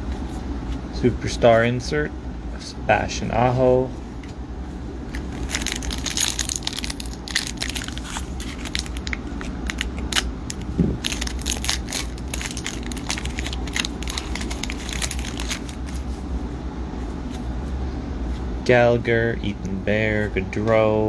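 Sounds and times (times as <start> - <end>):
cards being handled: 5.1 - 16.2
card pack wrapper crinkling and tearing: 5.2 - 16.2.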